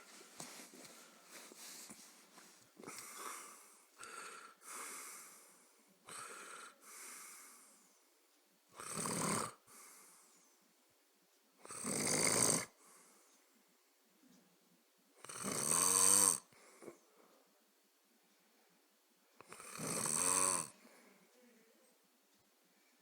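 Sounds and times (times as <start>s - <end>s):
soft rasping breaths: 0.0s - 8.2s, 9.5s - 10.7s, 12.7s - 14.5s, 16.5s - 17.6s, 20.6s - 22.0s
person snoring: 8.8s - 9.6s, 11.6s - 12.8s, 15.2s - 16.5s, 19.4s - 20.8s.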